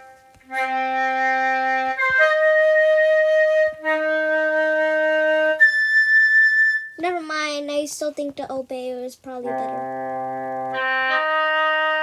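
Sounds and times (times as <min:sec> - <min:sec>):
flute notes from keyboard: 0:00.0 - 0:07.0, 0:09.5 - 0:12.0.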